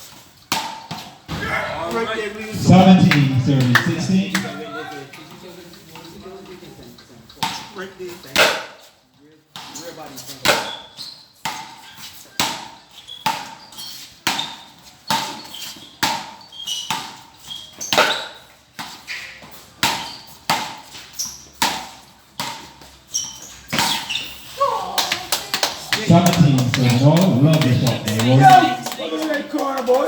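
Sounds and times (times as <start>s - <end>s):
paddles striking tennis ball: 25.9s - 29.5s.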